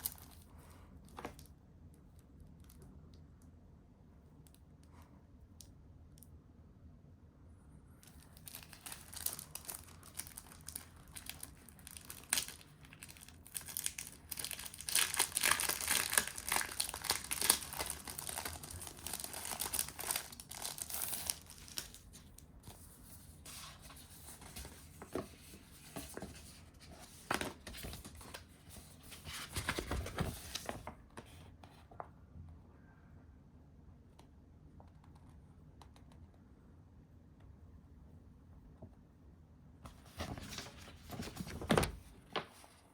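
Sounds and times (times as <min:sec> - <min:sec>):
paper and packaging crinkling: 0:08.0 - 0:31.4, 0:39.9 - 0:42.9.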